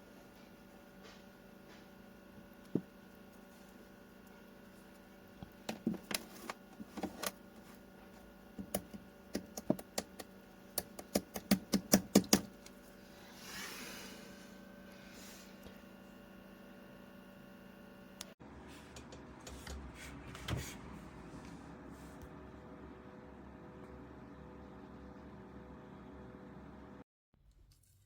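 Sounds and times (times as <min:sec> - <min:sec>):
faint steady hum: 0:00.0 - 0:20.2.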